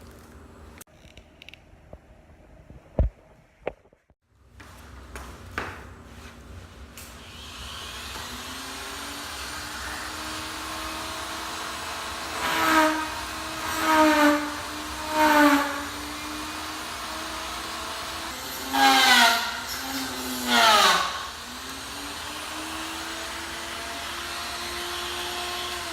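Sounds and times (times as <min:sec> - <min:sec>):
rotary tool cutting plastic: 0:12.2 - 0:16.6, 0:17.4 - 0:25.9.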